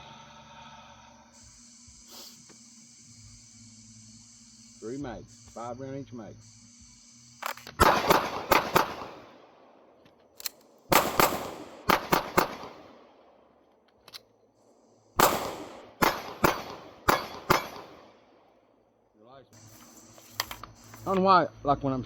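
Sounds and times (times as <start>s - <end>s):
pistol shots: 7.4s - 9.9s, 10.9s - 13.4s, 15.2s - 18.4s.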